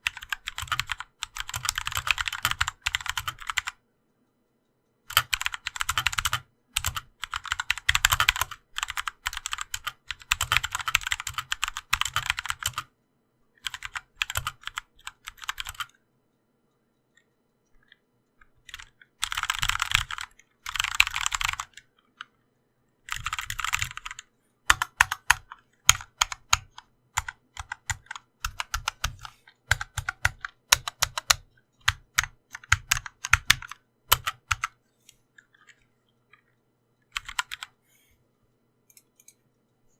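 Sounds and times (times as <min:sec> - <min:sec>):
mechanical keyboard typing: 0:00.0 - 0:03.8, 0:05.0 - 0:12.9, 0:13.6 - 0:16.0, 0:17.8 - 0:22.4, 0:23.0 - 0:34.8, 0:37.1 - 0:37.8.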